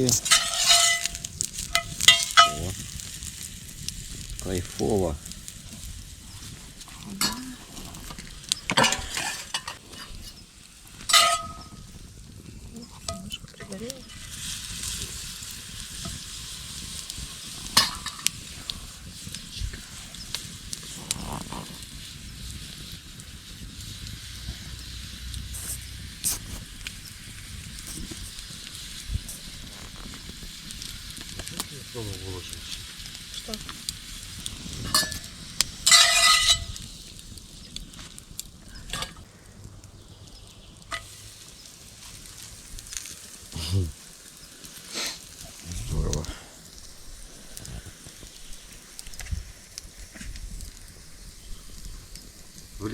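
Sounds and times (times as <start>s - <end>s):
flatbread sizzling in a pan: 0.0s - 52.9s
sharp crackling clicks: 23.8s - 52.9s.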